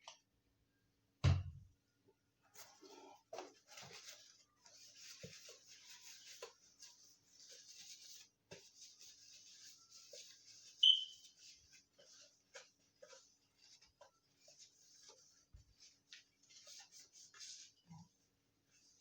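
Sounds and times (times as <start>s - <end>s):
wipe rubbing on packaging: 3.5s - 19.0s
brief squeak: 10.8s - 11.2s.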